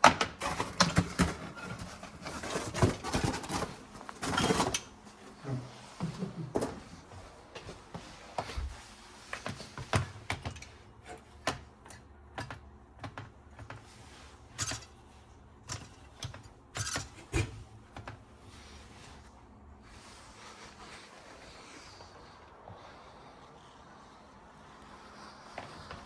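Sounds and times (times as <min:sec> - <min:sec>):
tools and metal parts clicking: 0:14.6 - 0:15.0, 0:15.6 - 0:17.5.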